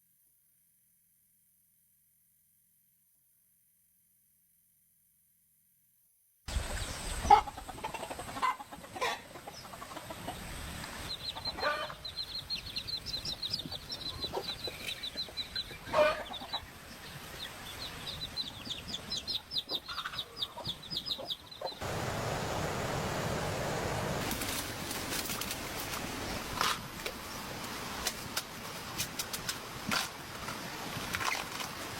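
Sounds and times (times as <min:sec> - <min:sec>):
chickens clucking: 0:06.7 - 0:21.9
steady hiss: 0:21.8 - 0:31.1.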